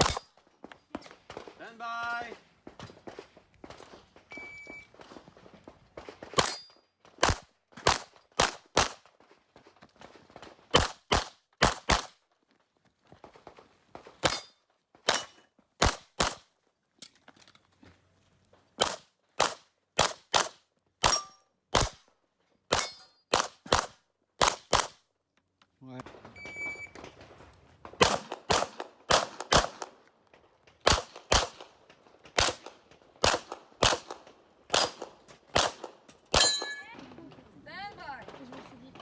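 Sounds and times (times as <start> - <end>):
pistol shots: 0.0 - 0.3, 7.2 - 9.0, 10.7 - 12.2, 18.8 - 22.0, 22.7 - 25.0, 28.0 - 30.0, 30.8 - 36.8
metallic ring: 36.4 - 36.9.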